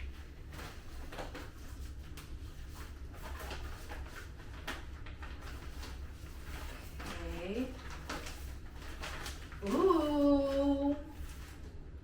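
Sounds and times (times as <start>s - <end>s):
plastic packaging rustling: 0.0s - 12.0s.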